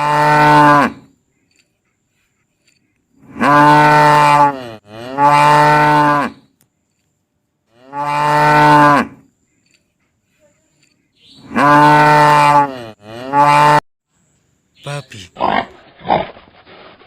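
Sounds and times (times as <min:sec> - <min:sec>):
cow mooing: 0:00.0 - 0:01.1, 0:03.2 - 0:06.4, 0:07.7 - 0:09.2, 0:11.4 - 0:13.8.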